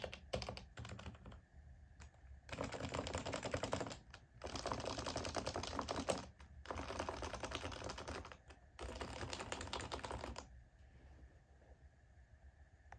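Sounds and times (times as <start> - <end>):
fast typing on keyboard: 0.0 - 1.4, 2.0 - 10.5.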